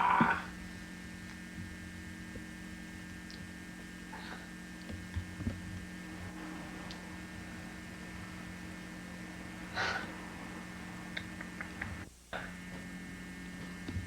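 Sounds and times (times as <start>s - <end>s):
steady electrical hum: 0.0s - 14.0s
breathy puff: 9.7s - 10.3s.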